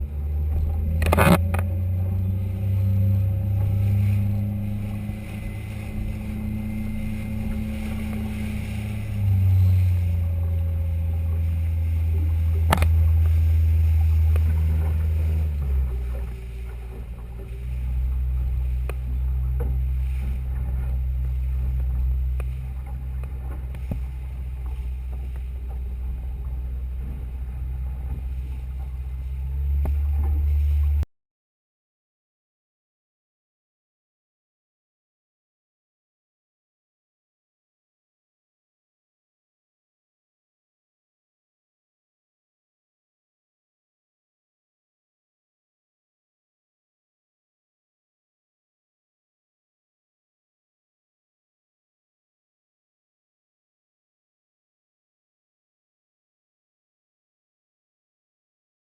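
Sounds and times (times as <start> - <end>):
boat engine humming: 0.0 - 31.1.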